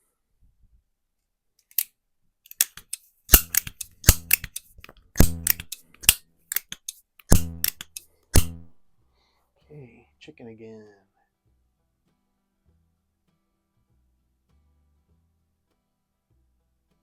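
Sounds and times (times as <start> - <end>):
pellet pistol pump clicks: 2.5 - 8.8
sharp click: 2.5 - 8.8.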